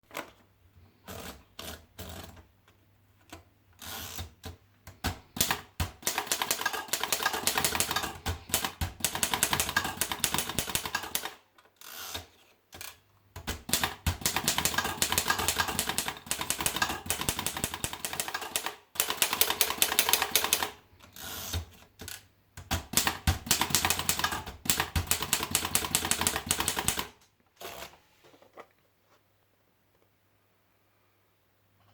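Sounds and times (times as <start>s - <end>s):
typewriter keys clacking: 5.3s - 11.3s, 13.4s - 20.8s, 22.6s - 27.1s.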